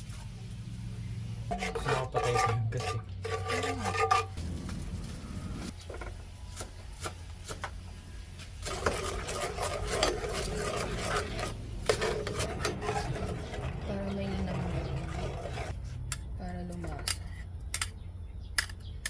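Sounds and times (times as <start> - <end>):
utensil scraping in a pot: 1.5 - 6.1, 8.4 - 15.8.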